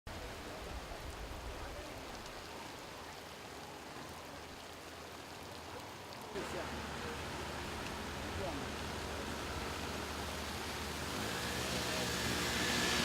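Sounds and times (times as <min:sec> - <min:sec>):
rain falling: 0:00.1 - 0:13.0
raindrop ticks: 0:02.1 - 0:02.8, 0:07.6 - 0:08.0.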